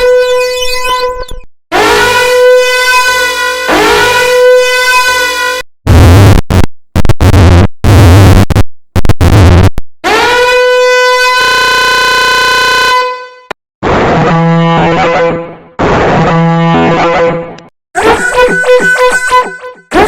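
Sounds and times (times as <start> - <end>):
siren-like alarm tone: 0.0 - 5.6, 10.0 - 13.1, 18.0 - 20.0
short bass-heavy blasts: 5.9 - 8.6.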